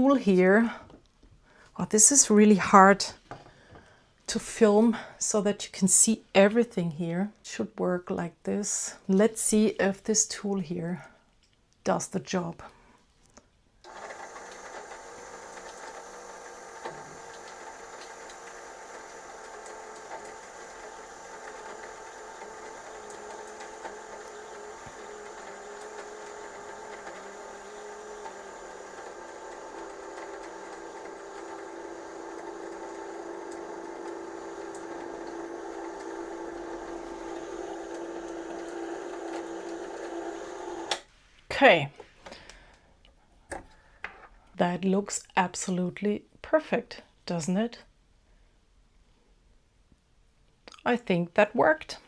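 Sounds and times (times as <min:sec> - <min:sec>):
sewing machine motor humming: 0:13.8 - 0:41.1.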